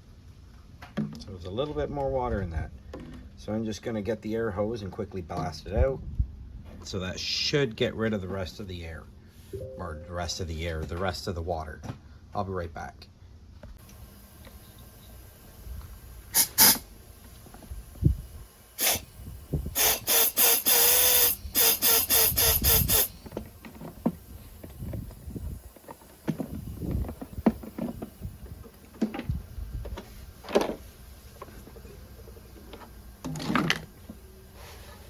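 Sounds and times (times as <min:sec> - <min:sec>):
compressed air blasts: 0:13.9 - 0:28.6.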